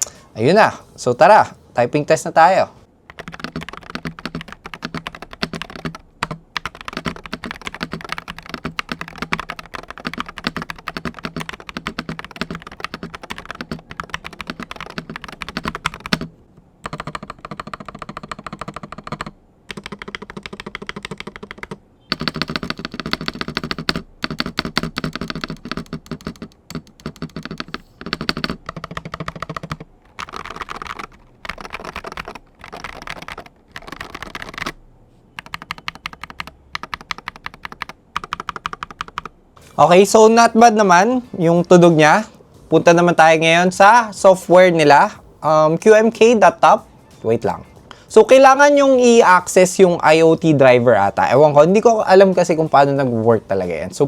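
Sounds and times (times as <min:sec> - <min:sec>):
fast keyboard typing: 0:03.1 - 0:34.8, 0:35.4 - 0:39.4.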